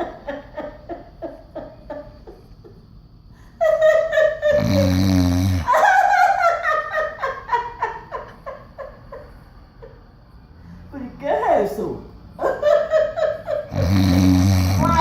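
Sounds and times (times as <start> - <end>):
woman laughing hard: 0.0 - 2.8, 3.4 - 5.0, 5.6 - 10.0, 12.4 - 13.9
loud deep snore: 4.5 - 5.7, 13.7 - 15.0.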